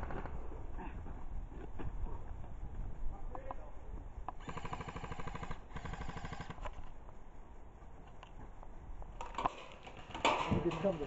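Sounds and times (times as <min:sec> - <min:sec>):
airsoft rifle full-auto burst: 0:04.4 - 0:06.7.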